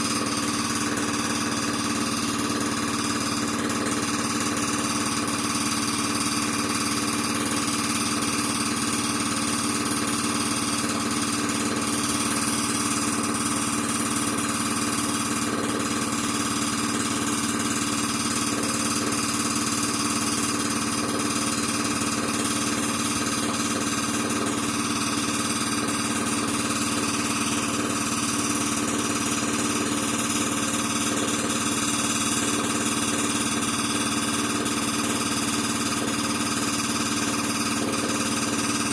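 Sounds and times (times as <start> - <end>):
air compressor running: 0.0 - 38.9.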